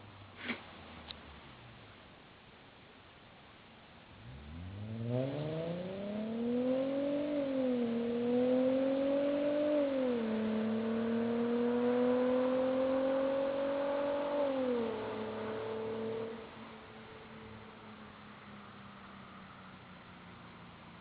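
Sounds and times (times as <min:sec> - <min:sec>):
car engine accelerating hard: 0:04.1 - 0:21.0.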